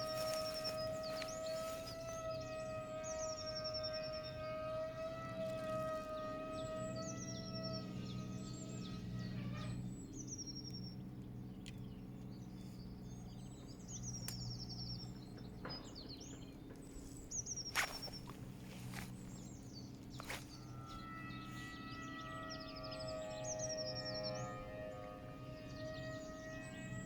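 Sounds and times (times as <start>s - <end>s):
sustained ringing tone: 0.0s - 9.8s, 17.7s - 27.0s
low hum: 0.0s - 27.0s
small birds chirping trills: 0.0s - 27.0s.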